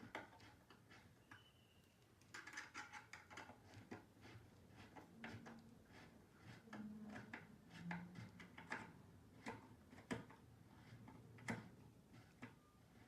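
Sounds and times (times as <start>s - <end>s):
furniture parts clicking and tapping: 2.2s - 4.0s, 6.7s - 12.6s.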